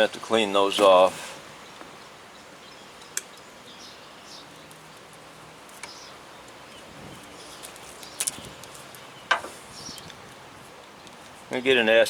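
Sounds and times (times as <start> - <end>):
sharp clicks: 7.6 - 10.2.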